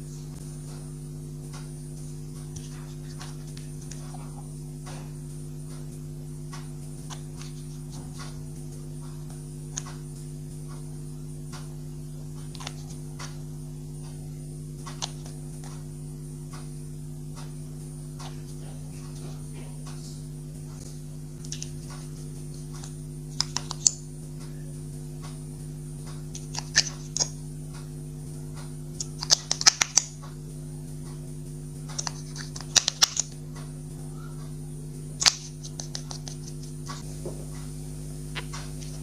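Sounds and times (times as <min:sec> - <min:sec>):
steady low hum: 0:00.0 - 0:39.0
slime clicking and crackling: 0:29.0 - 0:30.2, 0:31.9 - 0:33.3.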